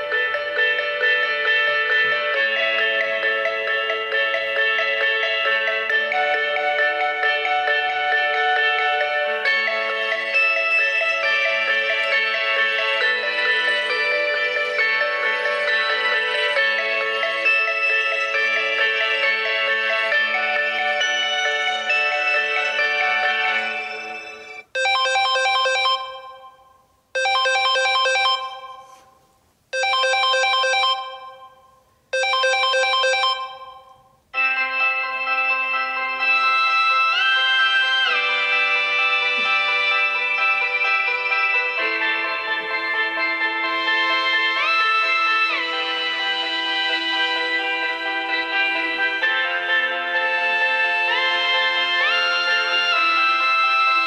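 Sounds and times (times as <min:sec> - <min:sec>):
ringtone sustained chords: 0:00.0 - 0:54.0
phone ringtone quick notes: 0:20.2 - 0:29.2, 0:29.8 - 0:46.2.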